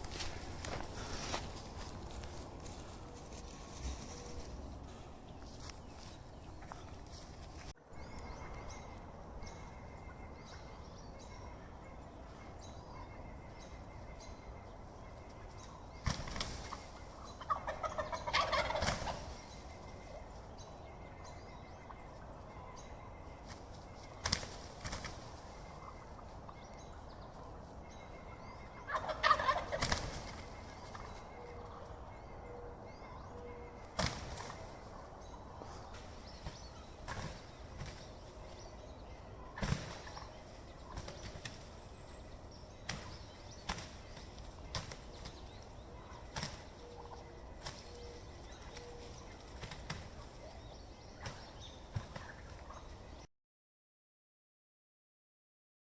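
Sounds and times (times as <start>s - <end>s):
turkey gobbling: 15.6s - 20.3s, 25.4s - 38.6s, 39.3s - 41.7s, 42.8s - 53.0s.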